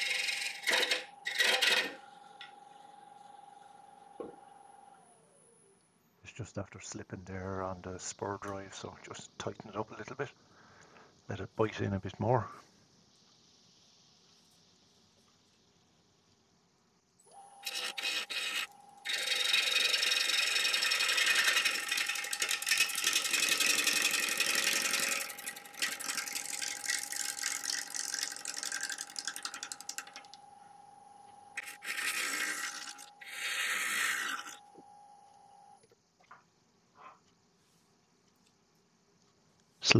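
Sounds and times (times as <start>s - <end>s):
gouge scraping wood: 0.0s - 2.1s, 17.6s - 29.7s, 31.6s - 34.6s
wood lathe whine: 0.0s - 5.6s, 17.2s - 35.8s.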